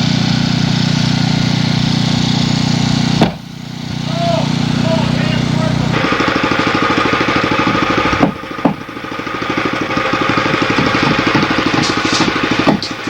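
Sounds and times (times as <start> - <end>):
engine running with pulsing beat: 0.0 - 13.0
sharp knocks: 3.2 - 3.5, 7.6 - 9.0, 10.1 - 13.0.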